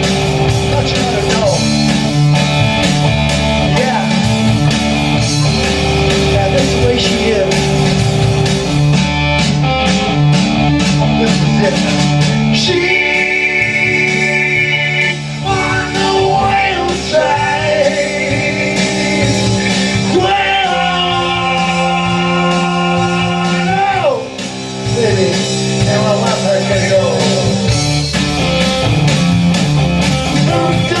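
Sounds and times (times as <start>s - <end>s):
drums: 0.0s - 31.0s
electric guitar: 0.0s - 31.0s.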